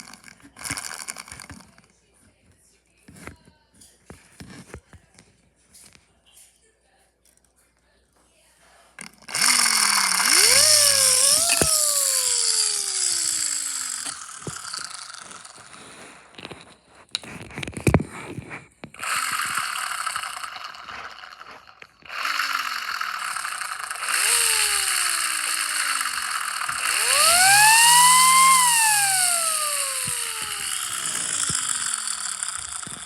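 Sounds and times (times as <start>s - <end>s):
steady rushing whir: 9.4s - 15.5s, 22.2s - 33.0s.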